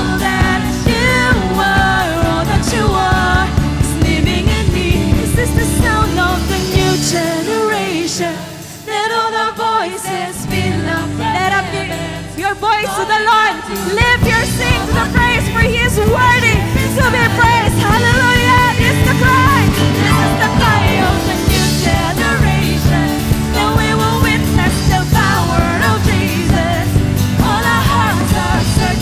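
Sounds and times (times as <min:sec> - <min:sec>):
live worship band with singers: 0:00.0 - 0:29.0.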